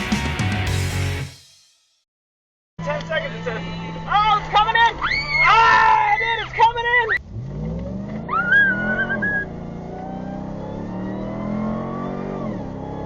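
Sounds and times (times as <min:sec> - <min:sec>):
high squeal: 0:04.9 - 0:06.4
truck engine accelerating: 0:07.1 - 0:13.0.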